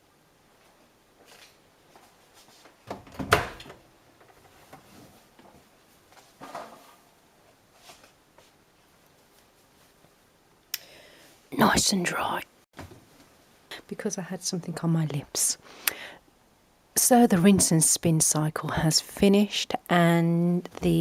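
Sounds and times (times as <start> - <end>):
laundry rustling: 0.6 - 10.3
washing machine door clunk: 2.9 - 3.8.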